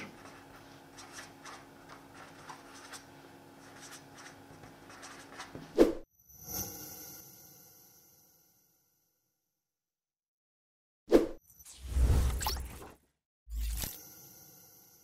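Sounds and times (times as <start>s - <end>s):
pen writing: 0.0s - 5.7s.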